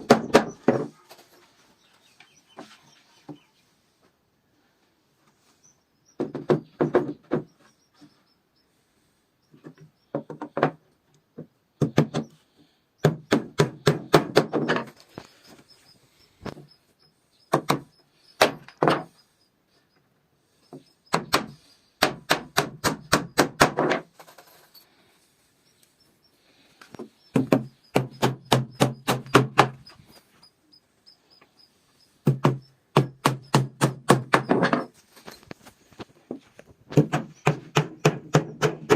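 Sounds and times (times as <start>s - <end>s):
hammer blows on wood: 27.3s - 29.9s, 32.2s - 34.9s.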